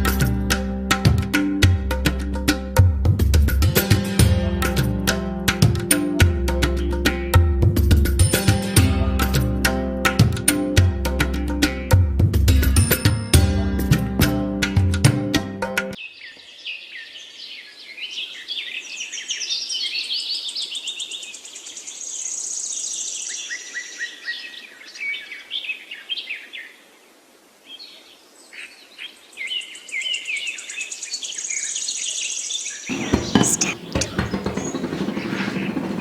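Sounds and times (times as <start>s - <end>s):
small birds chirping and singing: 16.0s - 26.7s, 27.7s - 36.0s
fast high bird trill: 32.9s - 36.0s.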